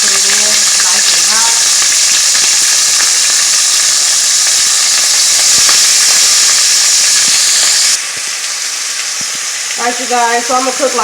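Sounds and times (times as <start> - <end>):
chicken sizzling in oil: 0.0 - 11.0.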